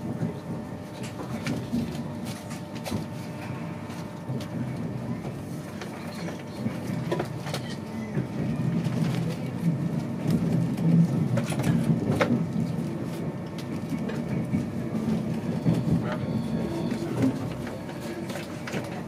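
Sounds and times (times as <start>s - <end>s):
train rumble and hum: 0.0s - 19.0s
rail clicks and knocks: 4.0s - 19.0s.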